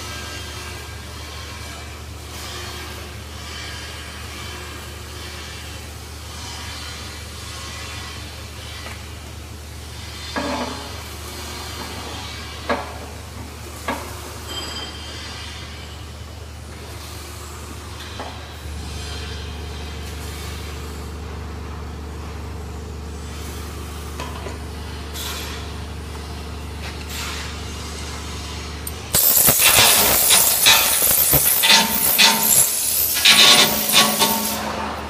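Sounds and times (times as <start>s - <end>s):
steady low hum: 17.4s - 35.0s
welding arc crackling: 25.8s - 34.9s.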